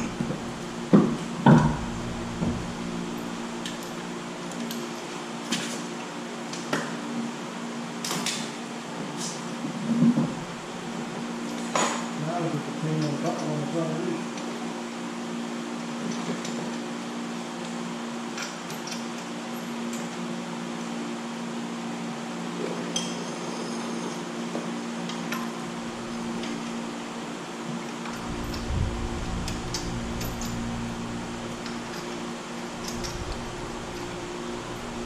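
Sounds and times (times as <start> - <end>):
dull low rumble: 0.0 - 4.4, 25.8 - 26.8, 28.1 - 35.0
steady hum: 0.0 - 5.4, 10.0 - 11.4, 25.6 - 35.0.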